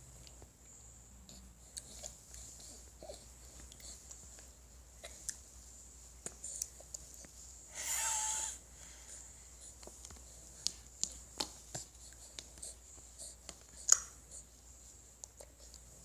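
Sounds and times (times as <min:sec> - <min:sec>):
baby eating clicks and taps: 0:09.8 - 0:12.6.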